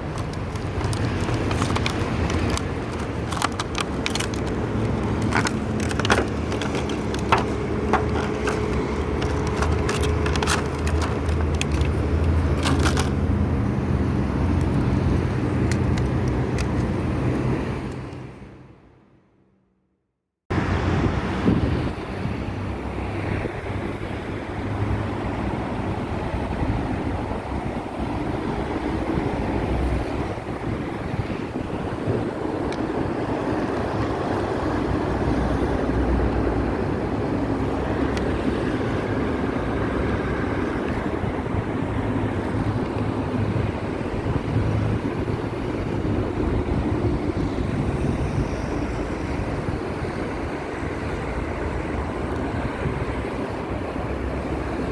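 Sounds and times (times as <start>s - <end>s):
road traffic rumble: 0.0s - 19.4s, 20.5s - 54.9s
wind on microphone: 20.5s - 54.9s.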